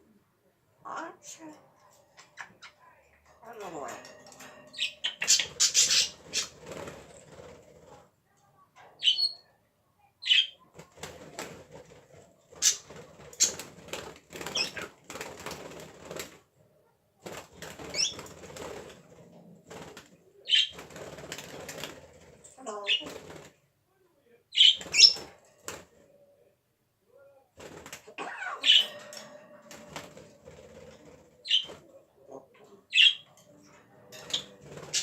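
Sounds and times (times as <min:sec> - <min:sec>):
parrot high squeaks: 0:28.2 - 0:29.1.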